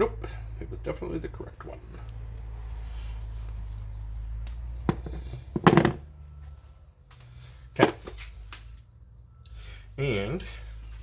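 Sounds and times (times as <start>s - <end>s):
knocks and thunks: 4.9s - 6.0s.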